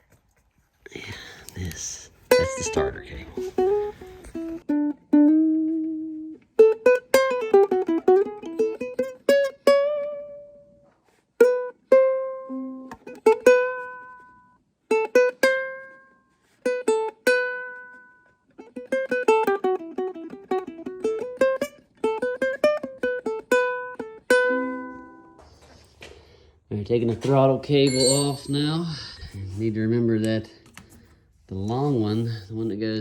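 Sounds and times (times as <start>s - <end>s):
ukulele music: 2.3s - 25.3s.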